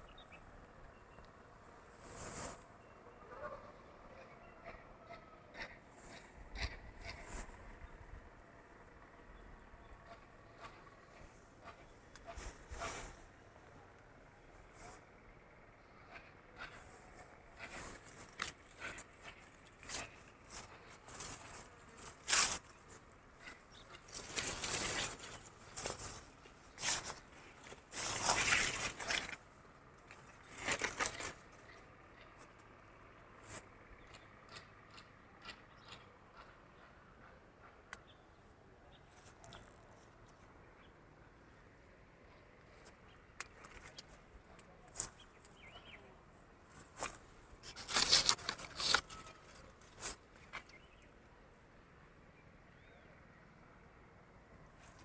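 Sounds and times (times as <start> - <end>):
rustling: 17.6 - 31.6, 46.7 - 51.0.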